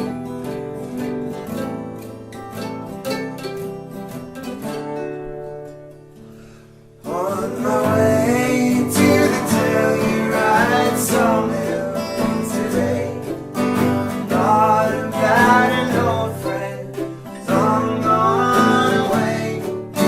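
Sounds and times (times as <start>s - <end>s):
acoustic guitar strumming: 0.0s - 20.0s
bending guitar melody: 0.0s - 20.0s.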